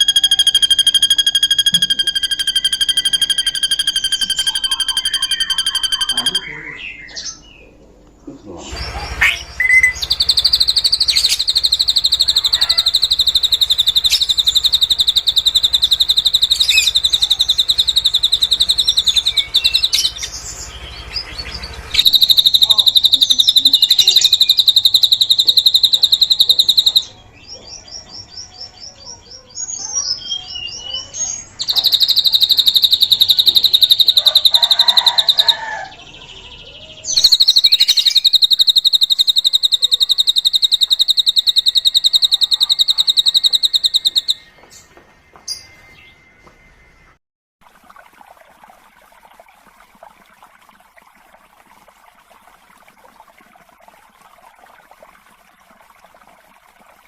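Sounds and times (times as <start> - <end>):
bird fast high trills: 0.0 - 7.0, 8.9 - 20.7, 21.6 - 27.2, 31.6 - 36.0, 37.1 - 44.5
bird chirps and whistles: 0.0 - 7.4, 9.2 - 20.3, 21.9 - 27.1, 30.0 - 35.7, 37.1 - 44.5.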